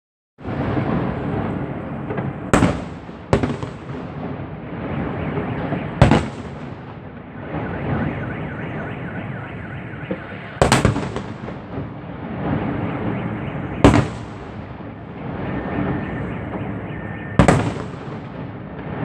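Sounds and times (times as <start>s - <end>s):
firework crackling and rumbling: 0.4s - 19.0s
firework shells banging: 10.1s - 12.0s.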